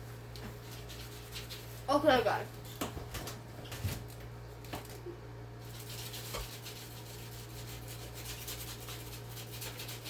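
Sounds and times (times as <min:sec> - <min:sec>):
knife scraping pizza on plate: 0:05.6 - 0:10.0.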